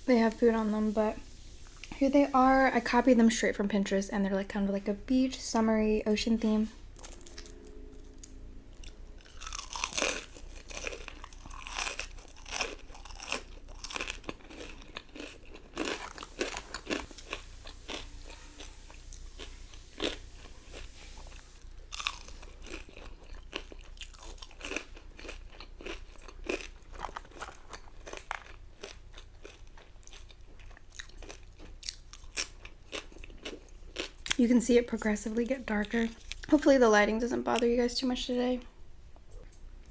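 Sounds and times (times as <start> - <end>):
person crunching crisp food: 7.0 - 34.4.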